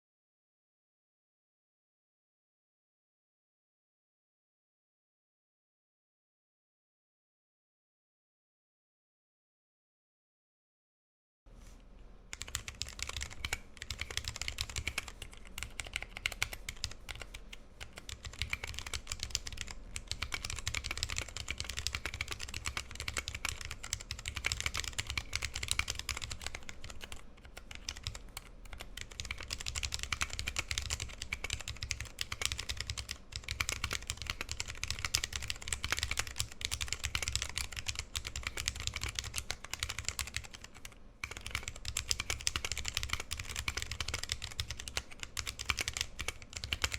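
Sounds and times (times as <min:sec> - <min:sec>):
steady low hum: 0:11.5 - 0:46.9
fast typing on mechanical keyboard: 0:12.3 - 0:46.9.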